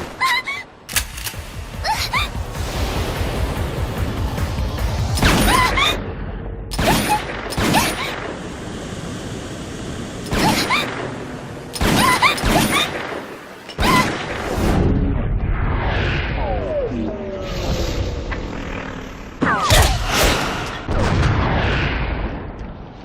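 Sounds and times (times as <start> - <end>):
mechanical clatter: 0.9 - 1.8.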